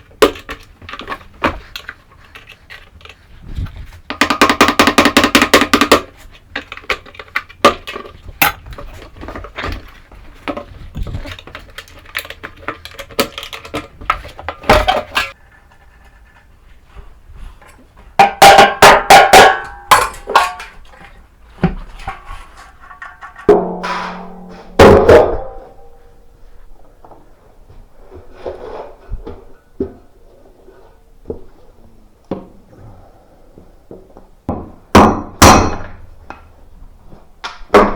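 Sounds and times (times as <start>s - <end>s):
tools and metal parts clattering: 5.4s - 15.4s, 18.2s - 21.2s, 21.9s - 25.7s.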